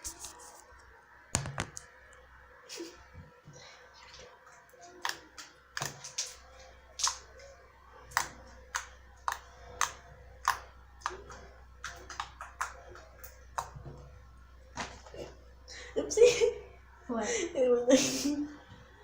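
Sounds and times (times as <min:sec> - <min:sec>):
slime squeezed wet clicks: 0:07.0 - 0:07.3.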